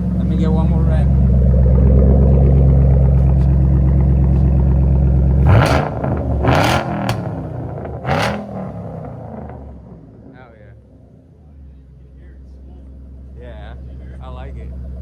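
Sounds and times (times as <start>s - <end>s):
supercharged car engine revving: 0.0s - 11.4s
loud rushes of engine noise: 0.0s - 12.3s.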